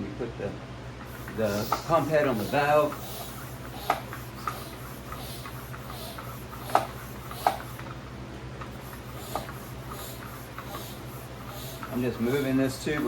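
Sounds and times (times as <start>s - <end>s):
steady low hum: 0.0s - 13.0s
bike pump head clicking: 1.1s - 8.0s, 8.8s - 12.0s.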